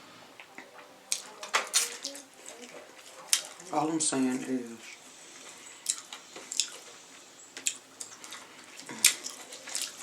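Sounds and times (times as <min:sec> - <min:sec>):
smacks and clicks of eating: 0:00.4 - 0:03.8, 0:04.8 - 0:10.0
person chewing wetly: 0:00.6 - 0:03.8, 0:05.2 - 0:10.0.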